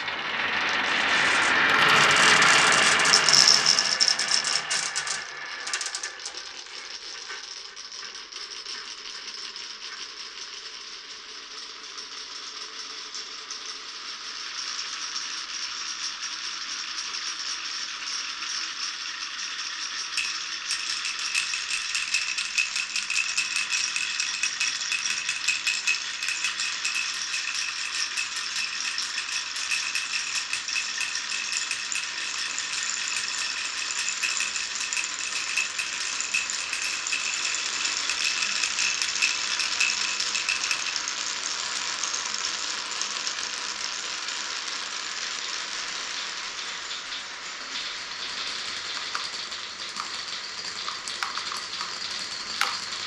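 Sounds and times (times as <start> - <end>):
marbles rattling through wooden run: 0.0 - 13.5, 20.0 - 42.0, 48.0 - 53.0.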